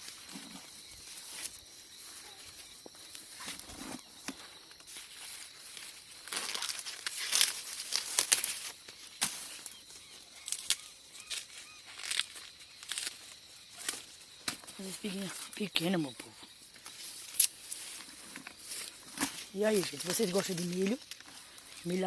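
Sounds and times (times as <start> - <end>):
dry corn leaves rustling: 0.0 - 22.0
stalks snapping: 6.3 - 9.4, 10.4 - 13.2, 17.3 - 17.6.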